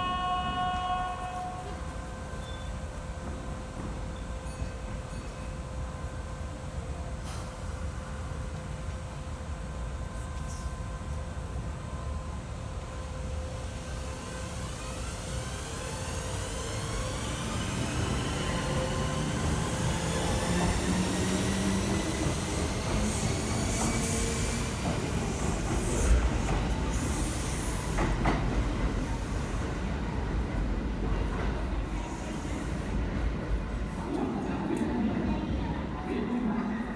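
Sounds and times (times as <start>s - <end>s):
train low rumble: 0.0s - 36.9s
electric train motor whine: 12.4s - 29.5s.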